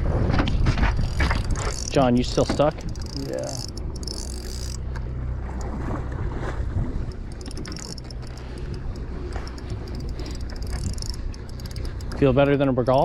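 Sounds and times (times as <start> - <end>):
sea noise: 0.0 - 13.0
wind: 0.0 - 13.0
boat engine humming: 0.5 - 13.0.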